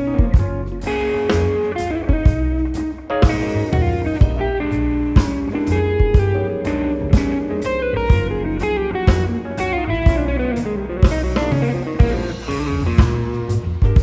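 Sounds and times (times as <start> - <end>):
electric guitar lines: 0.0 - 14.0
jazz-pop band playing: 0.0 - 14.0
low drum hits: 3.2 - 10.4.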